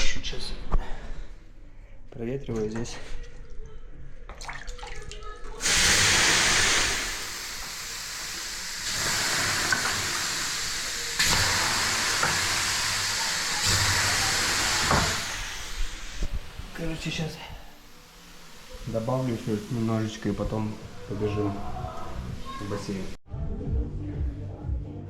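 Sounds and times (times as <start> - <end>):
water hissing on hot stones: 5.6 - 23.2.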